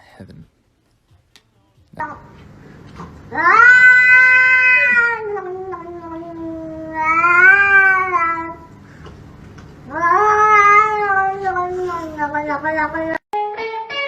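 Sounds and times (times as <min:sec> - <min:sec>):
cat yowling: 0:03.3 - 0:08.7, 0:09.8 - 0:13.2.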